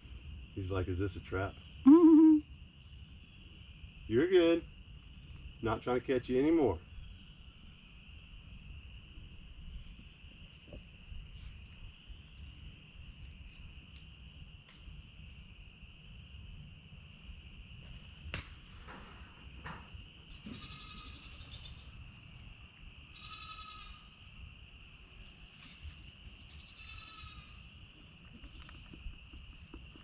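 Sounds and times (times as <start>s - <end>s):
goats bleating: 20.4s - 21.4s, 23.2s - 24.1s, 26.7s - 27.6s.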